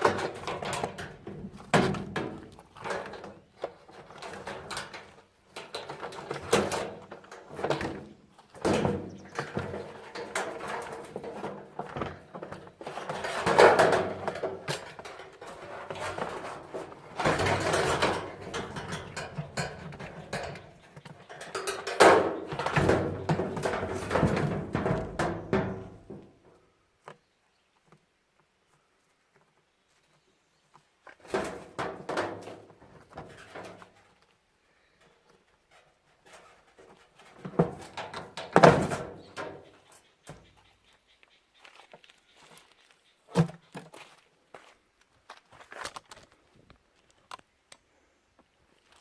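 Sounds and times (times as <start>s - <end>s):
metal and plastic parts clattering: 0.0s - 26.4s, 31.2s - 34.2s, 35.7s - 39.9s.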